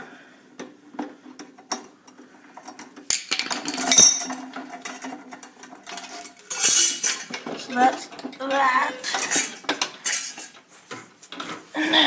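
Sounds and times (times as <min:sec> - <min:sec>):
metal tools clinking: 0:02.6 - 0:10.6
metallic clatter: 0:02.6 - 0:10.6.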